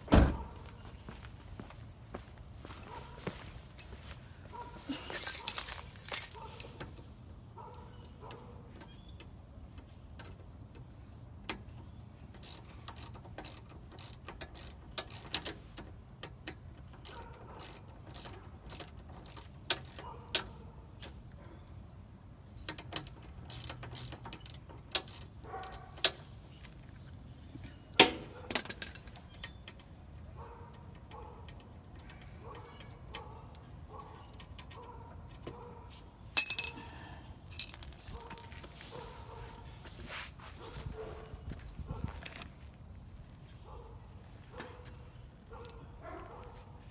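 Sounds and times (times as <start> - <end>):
metal tools clattering: 4.8 - 6.8, 36.4 - 38.0
metal tools clicking and clanking: 4.8 - 7.1, 36.4 - 38.0.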